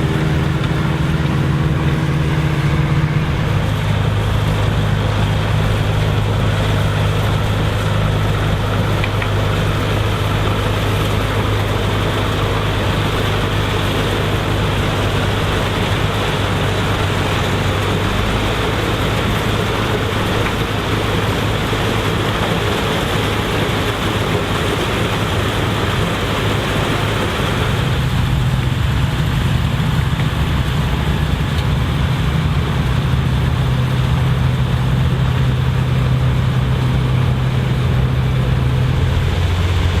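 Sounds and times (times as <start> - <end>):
combine harvester engine hum: 0.0 - 40.0
harvesting machinery clatter: 0.0 - 40.0.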